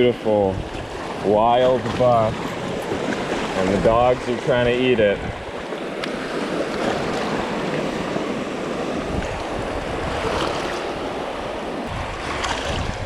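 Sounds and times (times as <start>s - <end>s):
small waves washing ashore: 0.0s - 13.0s
wind buffeting microphone: 0.0s - 13.0s.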